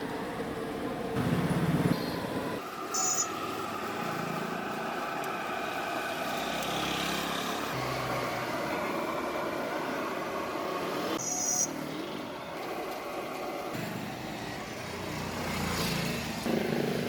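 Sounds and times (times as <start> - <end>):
passing vehicle engines: 0.0 - 17.0
street noise hum: 0.0 - 17.0.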